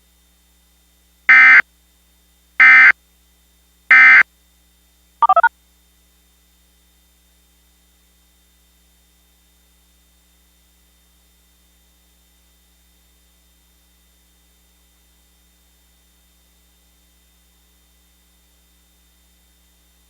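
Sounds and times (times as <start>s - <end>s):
digital data tone bursts: 1.3s - 1.6s, 2.6s - 2.9s, 3.9s - 4.2s, 5.2s - 5.5s
touch-tones: 1.3s - 1.6s, 2.6s - 2.9s, 3.9s - 4.2s, 5.2s - 5.5s.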